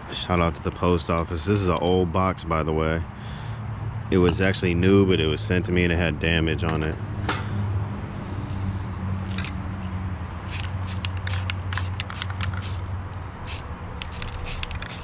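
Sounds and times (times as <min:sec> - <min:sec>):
spray can bursts: 0:10.5 - 0:12.9, 0:13.5 - 0:15.0.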